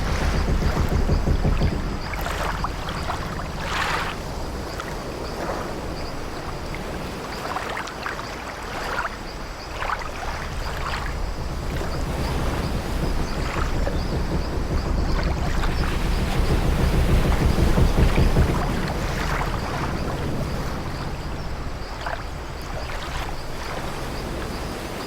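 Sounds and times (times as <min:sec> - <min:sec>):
wooden ship timbers creaking: 0:00.0 - 0:06.3, 0:10.4 - 0:24.8
sea waves washing: 0:00.0 - 0:25.0.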